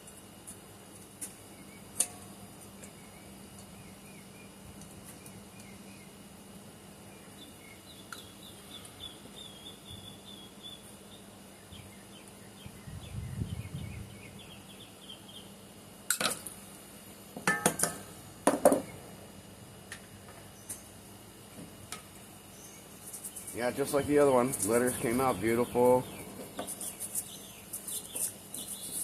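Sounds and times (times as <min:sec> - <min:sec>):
faint high chirping: 0:07.2 - 0:15.5.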